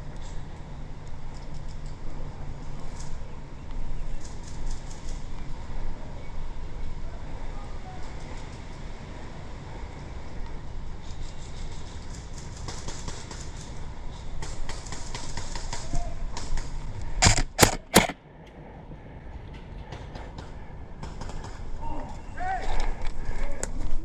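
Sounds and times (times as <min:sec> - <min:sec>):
faint distant airsoft shots: 0:17.2 - 0:18.2
loud sharp airsoft cracks: 0:17.2 - 0:18.2.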